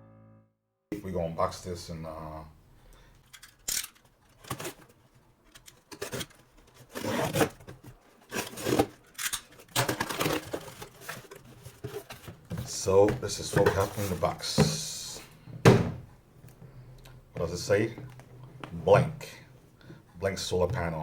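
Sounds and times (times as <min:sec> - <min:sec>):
cardboard packaging tearing: 0:04.4 - 0:05.0, 0:05.7 - 0:12.4.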